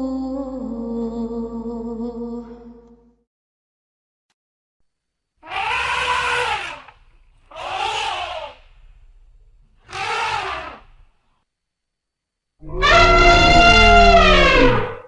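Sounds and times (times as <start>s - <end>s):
person imitating mammoth calls: 5.4s - 8.6s, 9.9s - 10.9s, 12.6s - 15.0s.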